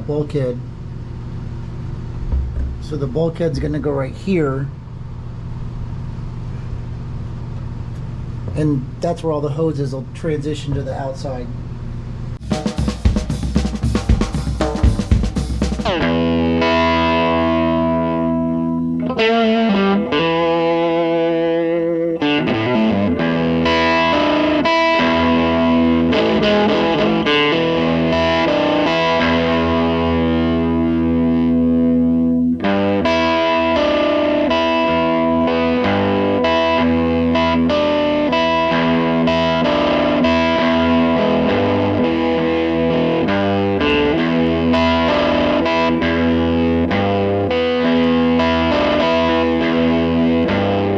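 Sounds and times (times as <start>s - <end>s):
rock music with electric guitar: 12.4s - 50.9s.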